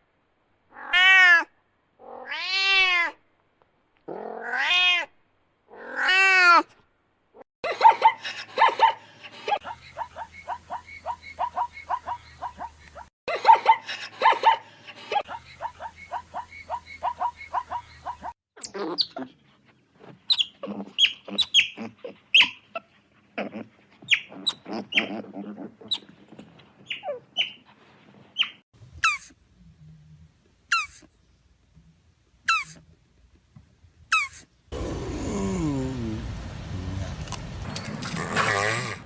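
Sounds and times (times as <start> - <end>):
high squeaky animal chirps: 20.3 - 22.6, 24.1 - 25.2, 26.8 - 27.6, 28.4 - 29.3, 30.7 - 31.0, 32.5 - 32.8, 34.1 - 34.4.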